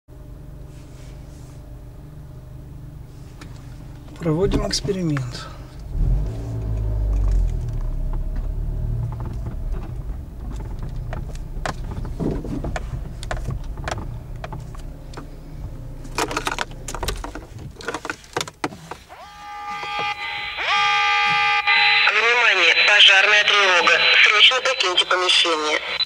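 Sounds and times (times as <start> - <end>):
low rumble: 1.8 - 17.8
electronic alarm siren wailing: 19.1 - 25.0.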